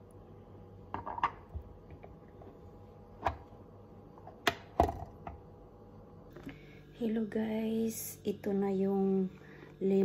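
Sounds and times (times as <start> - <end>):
kitchen items knocking and clicking: 0.9 - 2.6, 4.2 - 5.4.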